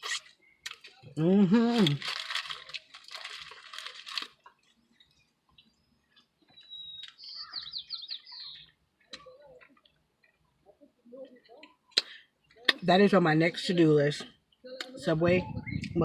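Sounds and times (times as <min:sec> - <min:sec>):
crunchy chewing: 0:00.0 - 0:10.6
bird singing high whistled notes: 0:06.6 - 0:08.7.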